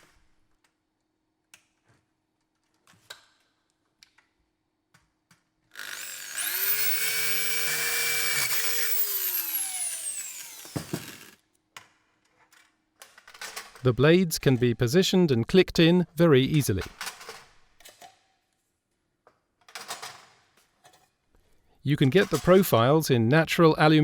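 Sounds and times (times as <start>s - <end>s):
power tool motor whining: 5.8s - 11.4s.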